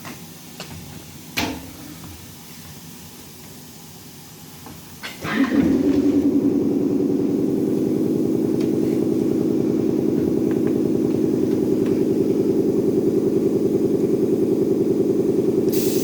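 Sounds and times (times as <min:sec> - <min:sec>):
machine motor humming: 0:05.5 - 0:16.0.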